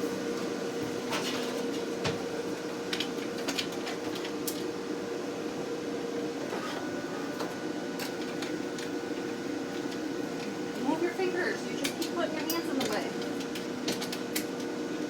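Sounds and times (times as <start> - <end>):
laser cutter humming: 4.7 - 15.0.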